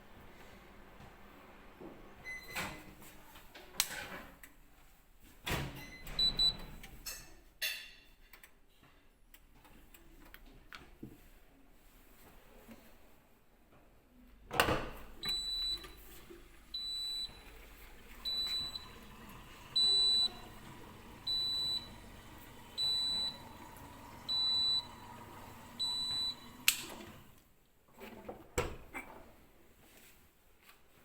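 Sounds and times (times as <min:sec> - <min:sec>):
dishwasher short high beep: 0:02.2 - 0:02.9, 0:05.8 - 0:06.7, 0:15.2 - 0:16.1, 0:16.8 - 0:17.5, 0:18.2 - 0:27.3.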